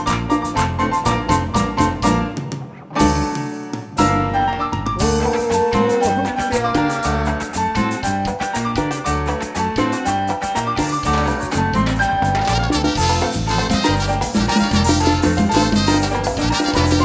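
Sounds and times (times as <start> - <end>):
cumbia band playing: 0.0 - 17.0.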